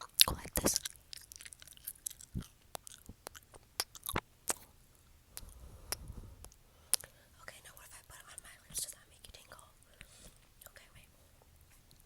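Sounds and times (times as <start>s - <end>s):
wet lip smacks and clicks: 0.0s - 4.7s, 5.3s - 7.1s.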